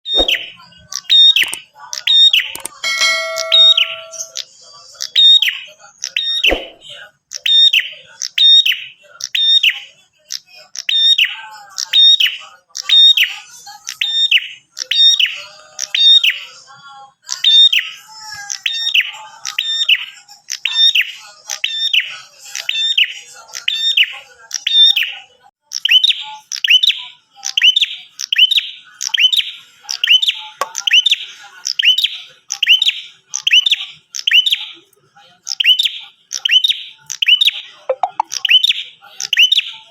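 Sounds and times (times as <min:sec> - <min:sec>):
bird chirping high notes: 0:02.6 - 0:04.4, 0:37.9 - 0:38.3.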